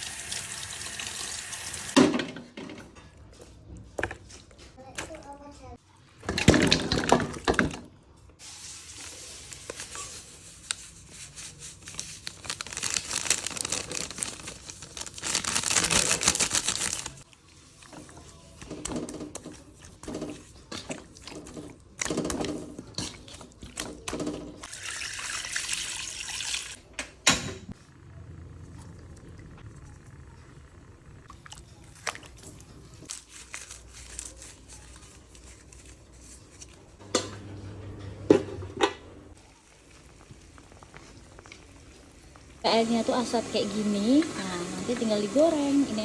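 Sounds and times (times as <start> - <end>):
water running and splashing: 24.7 - 26.8.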